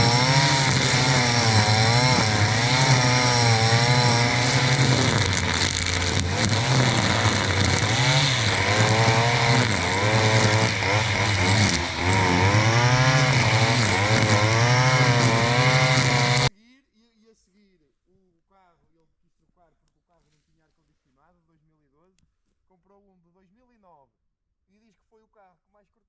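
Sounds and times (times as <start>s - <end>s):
brushcutter engine cutting undergrowth: 0.0s - 16.5s.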